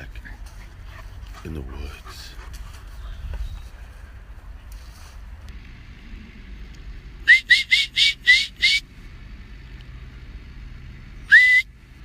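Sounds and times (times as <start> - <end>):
short rising whistles: 7.2 - 8.8, 11.2 - 11.7.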